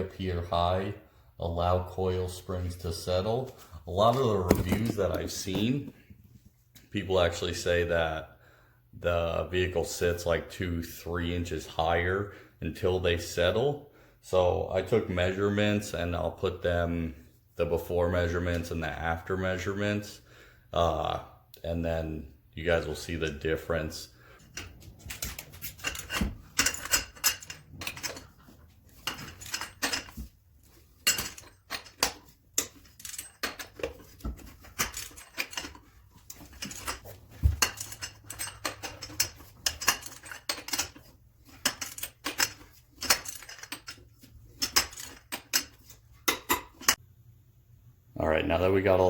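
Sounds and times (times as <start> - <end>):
wrench clinking on lug nuts: 24.4 - 47.0.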